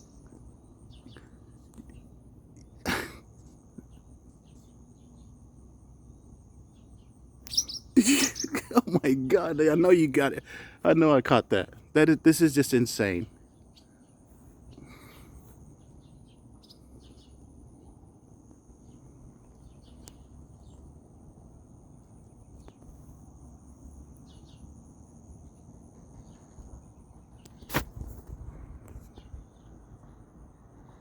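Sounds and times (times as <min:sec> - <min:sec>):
insect trill: 0:00.0 - 0:27.9
bird chirps: 0:06.2 - 0:10.8, 0:12.7 - 0:17.9.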